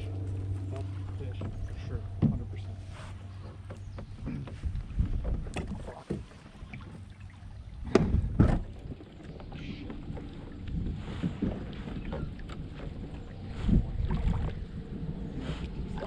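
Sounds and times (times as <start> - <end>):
water along a hull: 0.0 - 16.0
gear knocking in a kayak: 3.3 - 7.0, 7.8 - 14.6.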